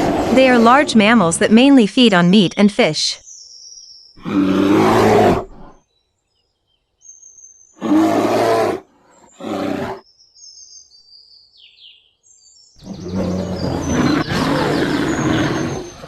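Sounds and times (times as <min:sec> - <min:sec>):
bear roaring: 0:00.0 - 0:01.0, 0:04.2 - 0:05.8, 0:07.8 - 0:10.0, 0:12.8 - 0:16.0
small birds chirping faintly: 0:00.0 - 0:16.0.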